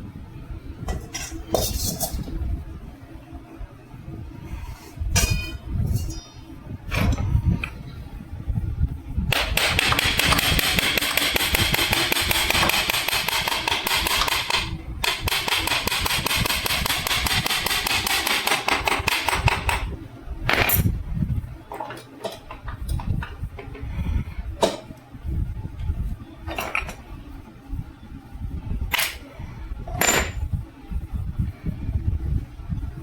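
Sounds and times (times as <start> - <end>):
impact wrench hammering: 9.3 - 19.8.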